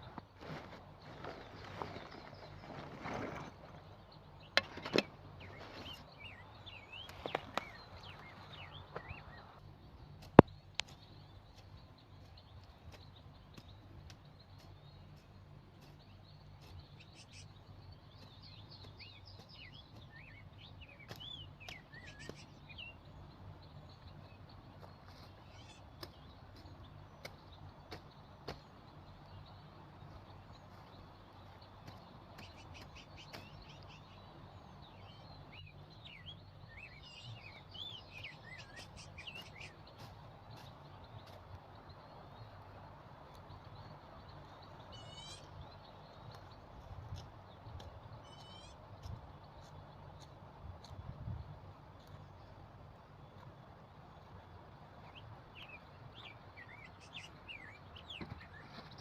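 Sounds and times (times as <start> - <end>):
small birds chirping: 0.0 - 59.0.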